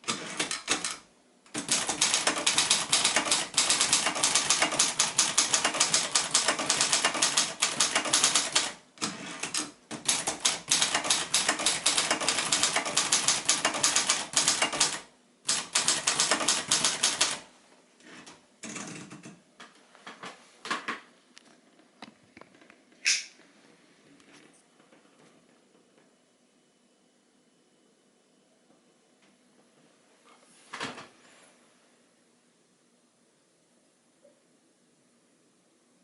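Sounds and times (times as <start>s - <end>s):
typewriter keys striking: 0.0s - 17.4s.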